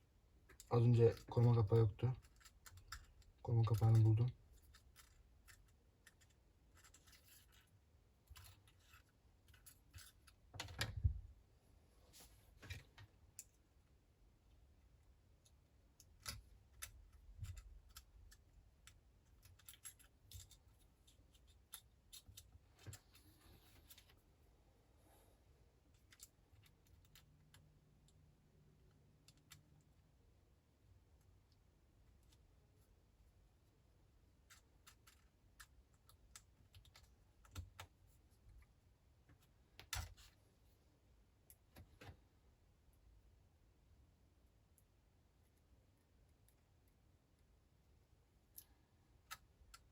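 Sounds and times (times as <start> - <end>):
small parts and tools clicking: 0.4 - 11.0, 15.3 - 24.2, 25.9 - 28.2, 28.8 - 30.0, 34.4 - 38.6, 48.4 - 49.9.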